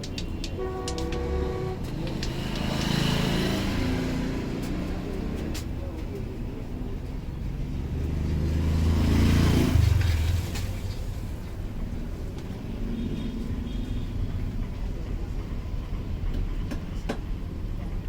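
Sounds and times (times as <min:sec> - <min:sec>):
vehicle engine passing by: 0:01.8 - 0:06.0, 0:06.6 - 0:11.7.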